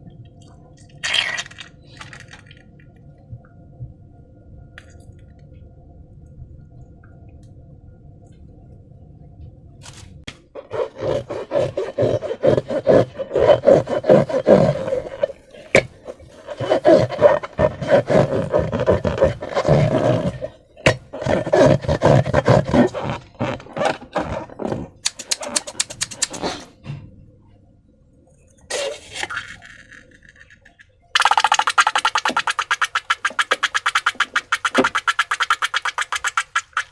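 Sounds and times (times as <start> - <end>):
slime squelching and crackling: 10.6 - 26.5, 31.2 - 36.9.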